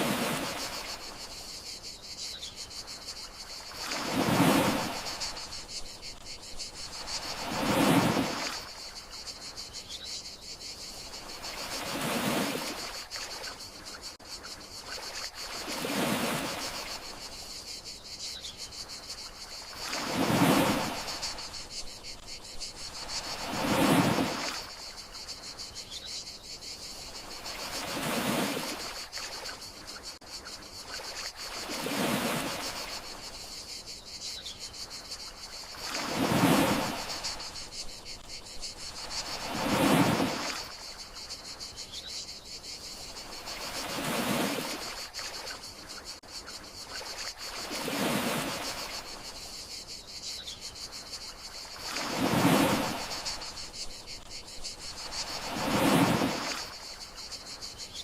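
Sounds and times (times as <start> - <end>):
sea waves washing: 0.0 - 1.2, 3.6 - 5.7, 6.8 - 8.8, 15.4 - 17.2, 19.7 - 22.2, 22.9 - 24.8, 35.7 - 37.8, 39.0 - 40.9, 51.8 - 53.7, 54.9 - 56.9
crickets chirring: 0.0 - 58.0.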